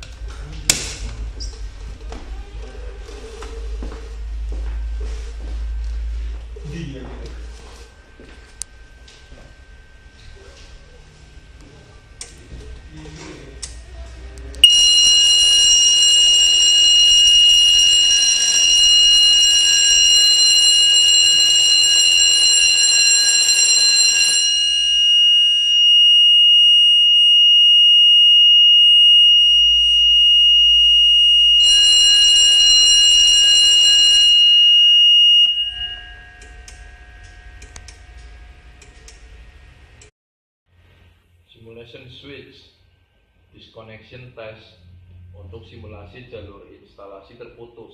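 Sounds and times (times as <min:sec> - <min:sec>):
electric alarm bell ringing: 0:04.8 - 0:12.2, 0:14.6 - 0:40.1
high-pitched buzzer tone: 0:14.6 - 0:39.1.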